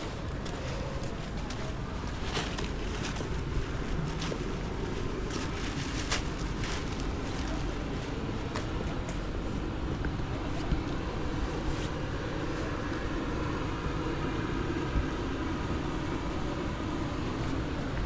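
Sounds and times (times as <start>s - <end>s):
engine hum: 0.0s - 18.0s
street traffic rumble: 0.0s - 18.0s.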